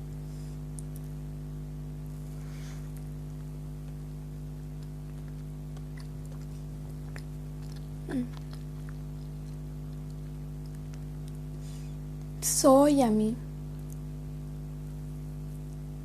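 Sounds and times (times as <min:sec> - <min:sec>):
steady low hum: 0:00.0 - 0:16.0
close-up chewing: 0:02.9 - 0:12.4
wet mouth clicks: 0:04.7 - 0:11.5
person humming mm: 0:08.0 - 0:08.4.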